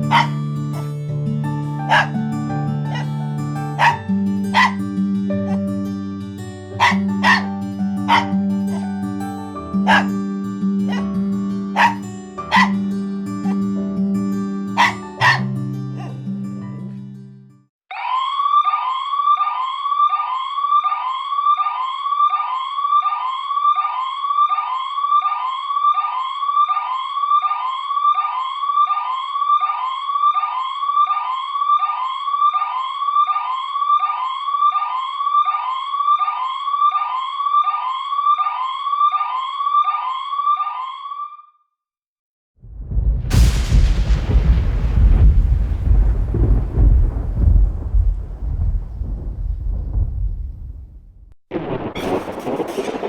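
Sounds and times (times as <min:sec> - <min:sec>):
siren whooping: 0:17.9 - 0:41.4.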